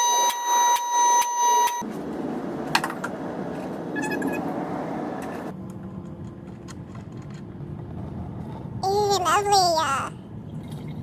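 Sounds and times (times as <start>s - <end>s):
electronic beep tone: 0.0s - 1.8s.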